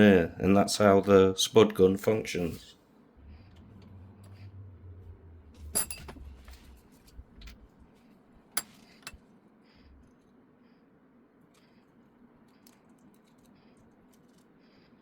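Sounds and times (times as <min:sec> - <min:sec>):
low handling rumble: 0:02.5 - 0:10.1
small hard parts clinking: 0:05.6 - 0:07.8.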